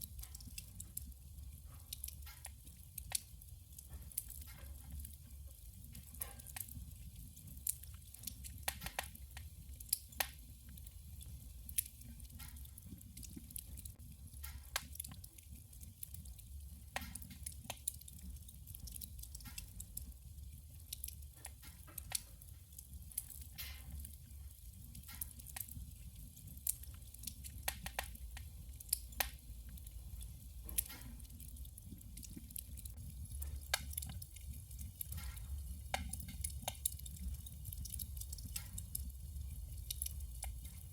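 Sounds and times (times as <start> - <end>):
firewood crackling and popping: 0.0 - 40.9
low rumble of fire: 0.0 - 40.9.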